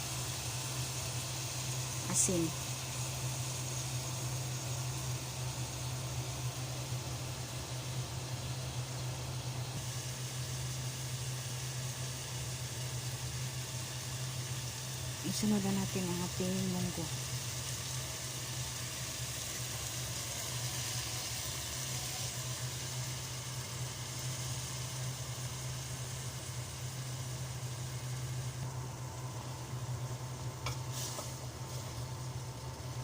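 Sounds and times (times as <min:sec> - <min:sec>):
low hum: 0:00.0 - 0:20.3
food sizzling in oil: 0:00.0 - 0:33.0.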